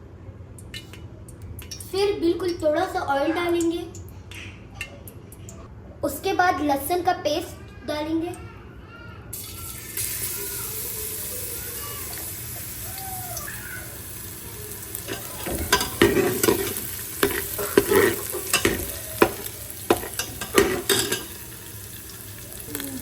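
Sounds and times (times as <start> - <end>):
garlic sizzling in hot oil: 9.4 - 23.0
spoon scraping metal pot: 15.0 - 21.4.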